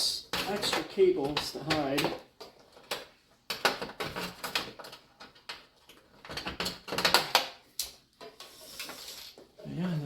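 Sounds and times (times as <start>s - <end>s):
computer hardware clicks and rattles: 0.3s - 7.6s.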